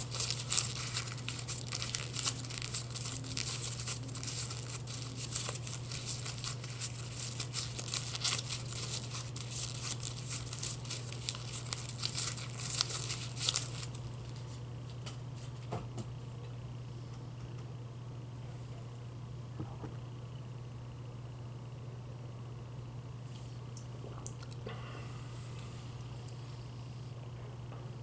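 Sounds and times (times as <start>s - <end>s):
plastic wrapping crinkling: 0.0s - 14.6s
steady low hum: 0.0s - 28.0s.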